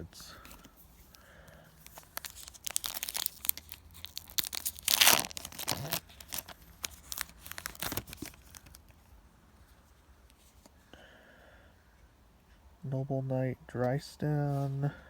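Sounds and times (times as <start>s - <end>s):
foil wrapper crinkling: 0.5s - 9.0s
foil wrapper tearing: 1.8s - 8.9s.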